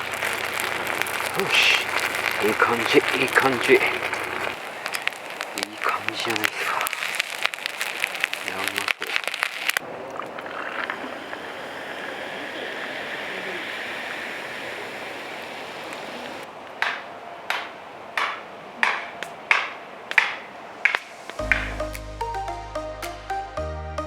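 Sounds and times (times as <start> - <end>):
food sizzling in a pan: 0.0 - 9.8
sharp metallic strikes: 16.8 - 23.6.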